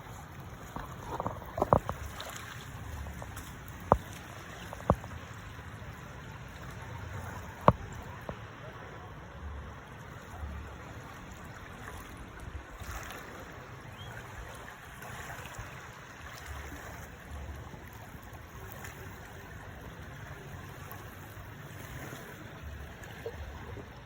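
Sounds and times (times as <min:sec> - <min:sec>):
wind buffeting microphone: 0:00.0 - 0:09.6
sea water rushing: 0:00.0 - 0:24.0.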